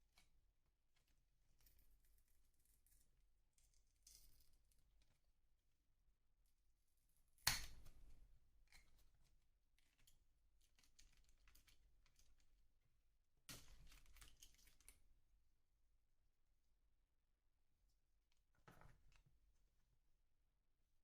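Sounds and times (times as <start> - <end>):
small parts clicking and rattling: 9.8 - 12.5.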